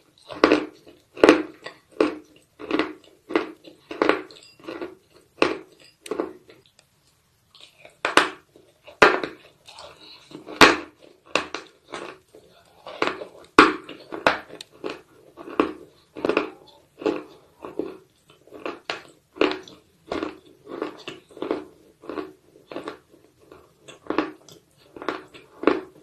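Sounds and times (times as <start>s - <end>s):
dry gritty chewing crunches: 0.0s - 26.0s.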